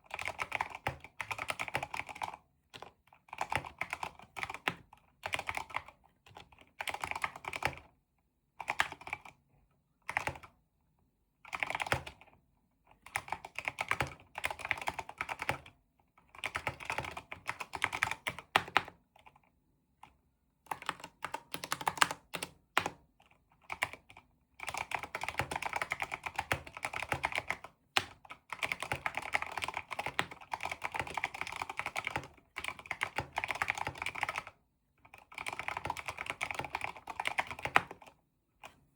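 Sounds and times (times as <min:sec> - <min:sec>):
typing on mechanical keyboard: 0:00.0 - 0:07.9, 0:08.6 - 0:09.4, 0:10.1 - 0:10.5, 0:11.5 - 0:12.3, 0:13.0 - 0:19.4, 0:20.7 - 0:38.8.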